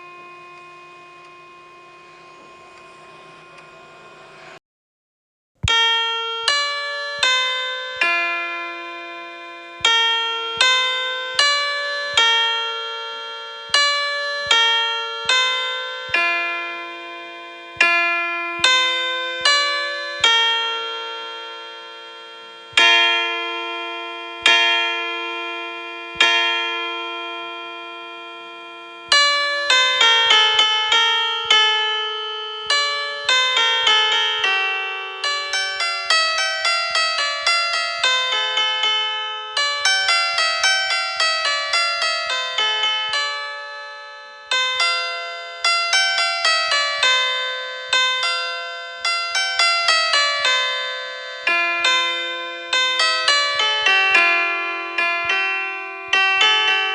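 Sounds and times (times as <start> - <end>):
piano notes like bells: 5.6 - 56.9.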